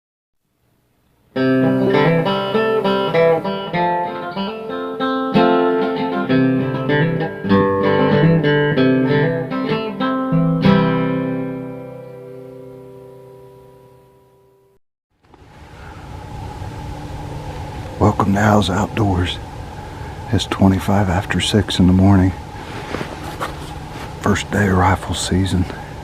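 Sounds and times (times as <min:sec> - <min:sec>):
plucked guitar music: 0:01.4 - 0:14.6.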